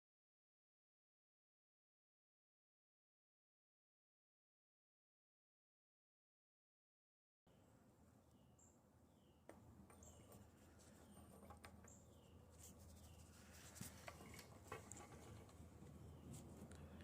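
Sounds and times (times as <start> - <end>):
faint background hum: 7.5 - 17.0.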